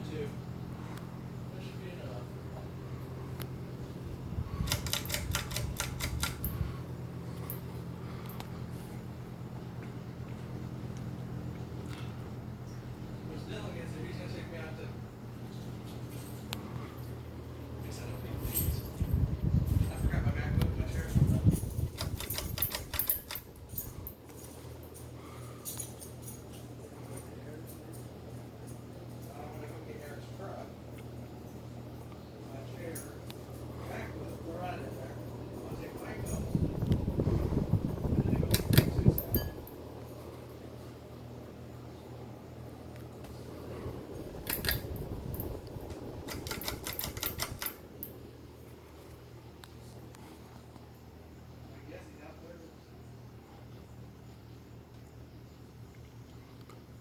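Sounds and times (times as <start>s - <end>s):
steady low hum: 0.0s - 57.0s
sharp clicks and light rattles: 4.5s - 6.8s, 19.7s - 29.8s, 38.0s - 39.8s, 44.2s - 48.2s
sharp clicks: 4.6s - 6.6s, 21.8s - 23.9s, 38.4s - 39.4s, 44.4s - 48.1s.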